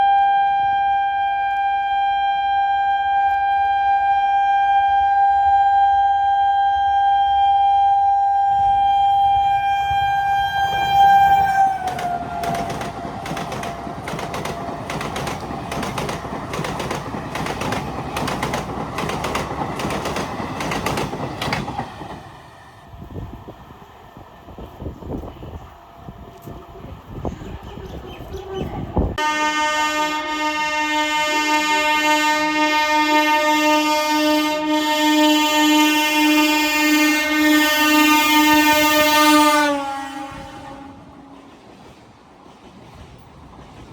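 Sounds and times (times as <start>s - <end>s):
train horn blast: 0.0s - 13.0s, 29.2s - 41.5s
rush of passing train: 0.0s - 43.9s
wheels clattering over rail joints: 11.8s - 22.2s.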